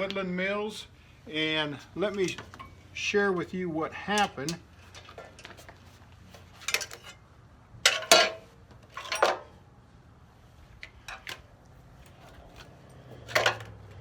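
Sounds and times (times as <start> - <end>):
metal objects clanking: 7.9 - 9.5, 13.2 - 13.8.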